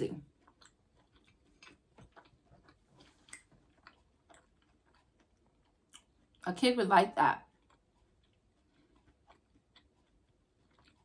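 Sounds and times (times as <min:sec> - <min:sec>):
mouth clicks of chewing: 0:00.3 - 0:06.4.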